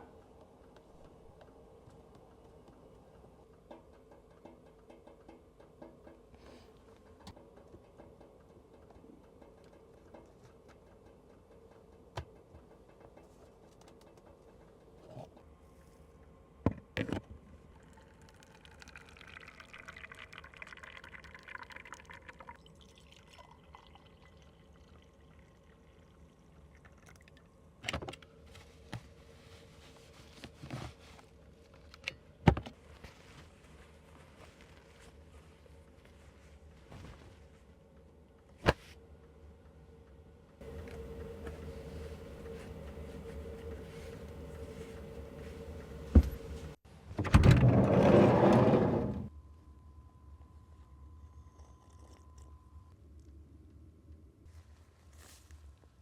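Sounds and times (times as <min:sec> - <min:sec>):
faint steady hum: 0:00.0 - 0:56.0
liquid being poured: 0:17.8 - 0:27.5.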